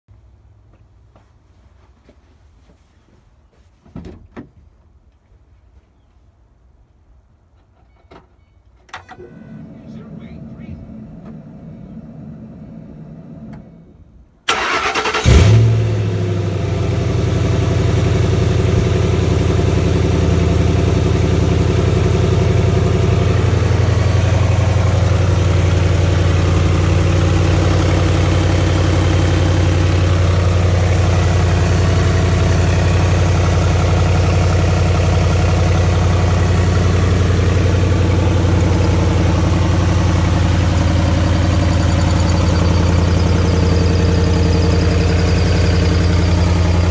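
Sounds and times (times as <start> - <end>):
car engine starting and idling: 8.8 - 46.9
engine ticking: 14.5 - 46.9.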